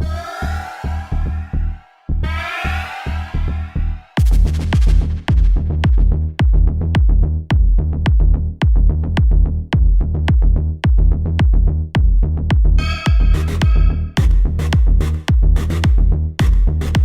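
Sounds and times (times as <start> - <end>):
deep bass: 0.0 - 17.0
drum machine kick: 4.2 - 17.0.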